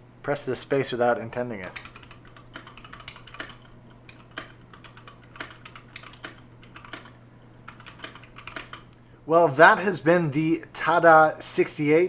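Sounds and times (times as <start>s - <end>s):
typing on mechanical keyboard: 1.6s - 8.9s.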